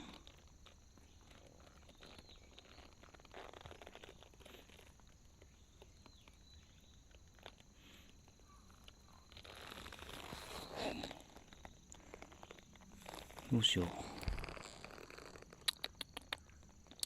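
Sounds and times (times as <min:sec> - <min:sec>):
faint rustling: 0:00.0 - 0:15.7.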